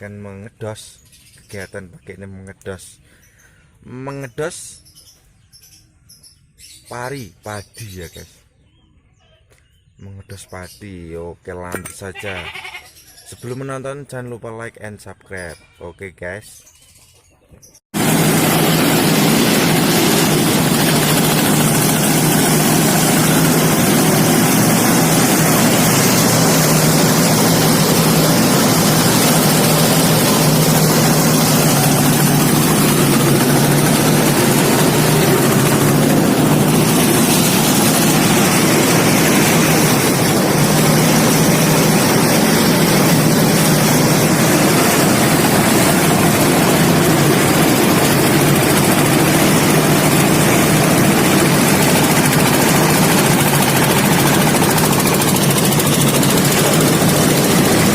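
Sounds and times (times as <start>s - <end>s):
threshing machine droning: 18.0s - 57.9s.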